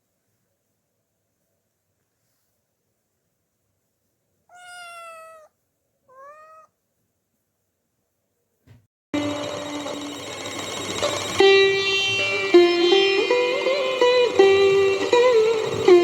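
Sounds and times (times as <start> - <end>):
cat meowing: 4.5 - 6.8
plucked-string background music: 9.2 - 16.0.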